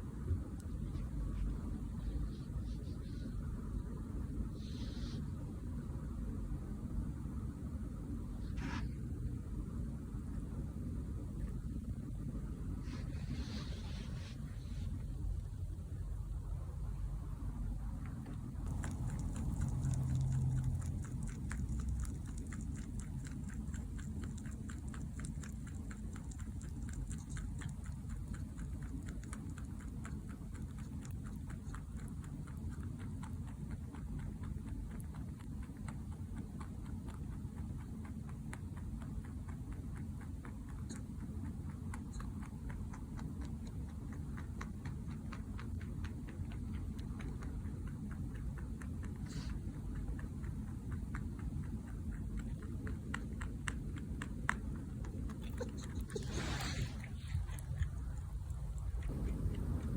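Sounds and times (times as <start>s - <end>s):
low steady hum: 0.0s - 59.9s
rabbit teeth clicking while chewing: 18.0s - 59.9s.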